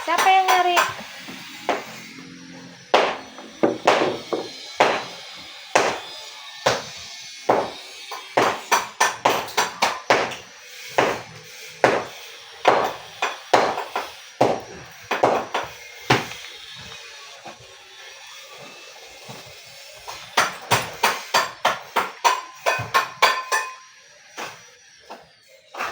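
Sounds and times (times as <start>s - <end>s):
ringing hammer blows: 0.0s - 16.9s, 20.1s - 24.6s.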